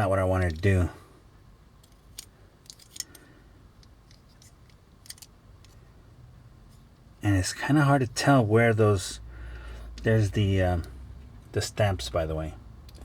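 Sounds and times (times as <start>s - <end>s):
toy robot clicks and taps: 4.1s - 5.3s.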